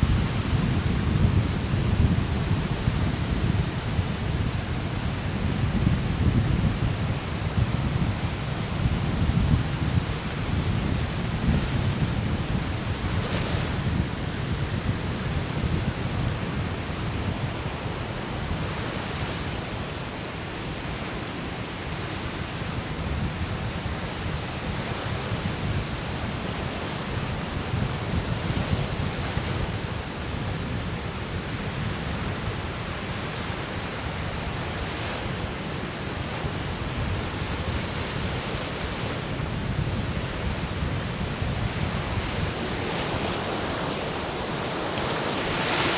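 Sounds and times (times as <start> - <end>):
wind buffeting microphone: 0.0 - 17.9, 34.1 - 45.9
waves washing onto sand: 0.0 - 45.9.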